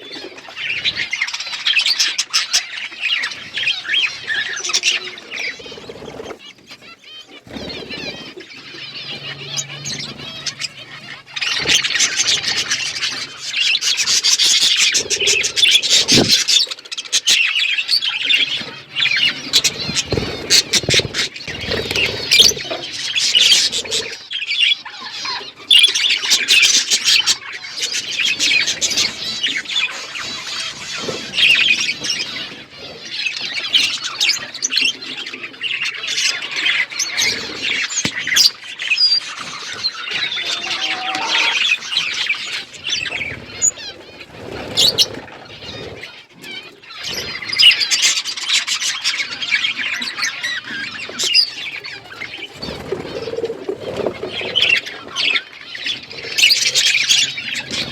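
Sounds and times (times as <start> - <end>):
bird squawks: 0.0 - 53.4
budgerigars chirping: 0.1 - 53.4
wing flutter: 18.3 - 24.2, 37.3 - 48.0.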